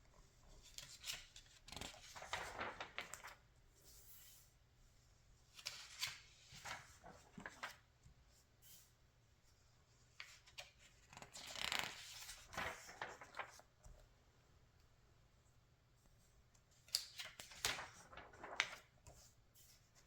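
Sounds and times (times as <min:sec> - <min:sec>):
magazine pages rustling: 0:00.5 - 0:03.4, 0:05.6 - 0:07.9, 0:10.2 - 0:13.8, 0:16.8 - 0:19.2.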